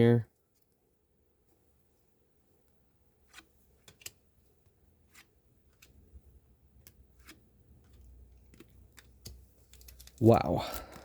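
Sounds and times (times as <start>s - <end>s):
trading cards flipped by hand: 3.2s - 4.3s, 5.0s - 6.1s, 6.8s - 11.0s.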